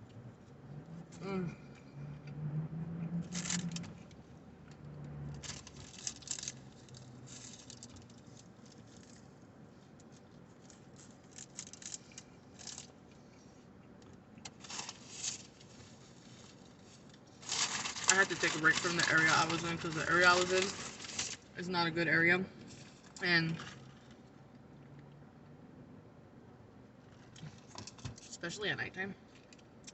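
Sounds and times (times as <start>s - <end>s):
low hum: 0.0s - 27.6s
food wrapper crinkling: 5.4s - 9.2s, 10.5s - 13.0s, 14.5s - 21.5s.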